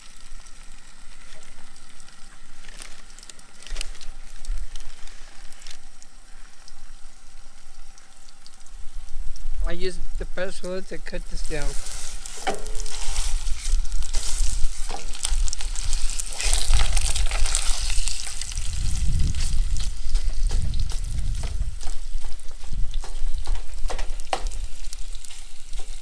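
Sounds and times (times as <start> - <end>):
sausage sizzling in oil: 0.0 - 26.0
spatula scraping a pot: 11.3 - 26.0
low rumble: 18.4 - 23.1.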